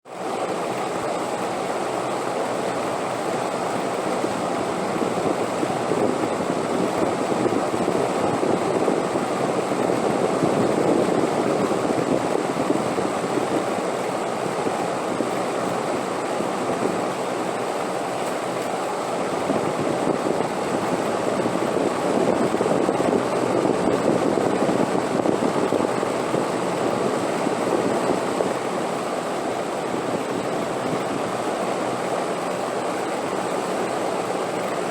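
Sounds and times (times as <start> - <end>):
wind blowing in gusts: 3.8 - 17.7, 19.1 - 32.2.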